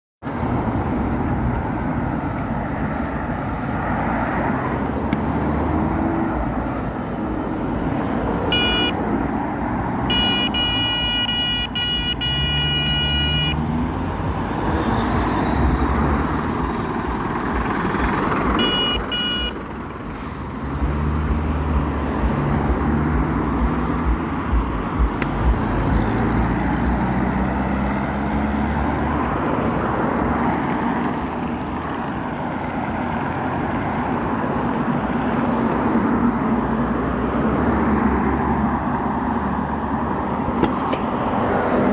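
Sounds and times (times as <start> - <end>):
traffic rumble: 0.2 - 41.9
car horn honks: 8.5 - 9.0, 10.1 - 13.6, 18.5 - 19.6.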